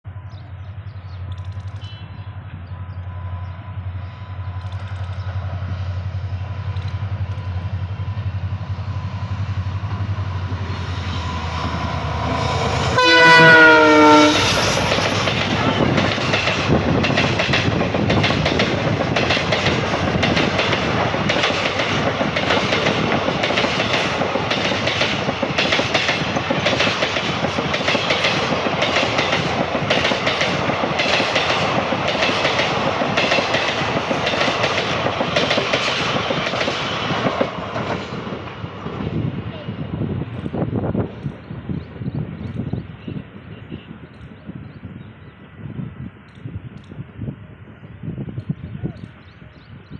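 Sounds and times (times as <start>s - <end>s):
diesel locomotive engine rumble: 0.0s - 49.9s
train wheels clickety-clack: 1.1s - 2.6s, 4.4s - 44.4s
locomotive horn blast: 11.0s - 14.9s.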